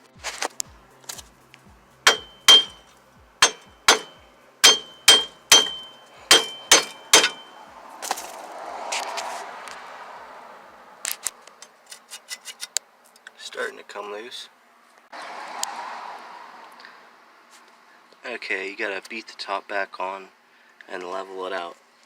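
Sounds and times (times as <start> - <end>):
hammer blows on steel: 2.1 - 7.6.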